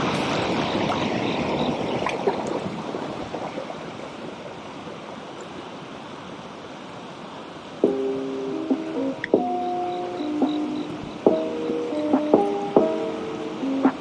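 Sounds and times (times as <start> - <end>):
stream flowing over rocks: 0.0 - 10.2.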